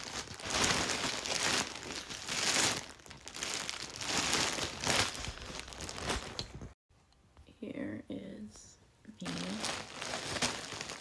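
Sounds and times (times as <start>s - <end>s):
plastic packaging crinkling: 0.0s - 6.8s, 9.2s - 11.0s.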